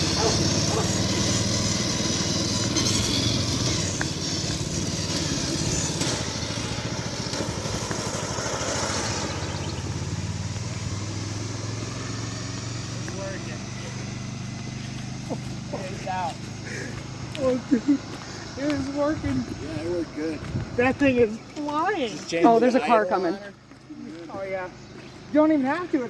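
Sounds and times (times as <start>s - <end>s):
riding lawn mower engine running: 0.0s - 26.0s.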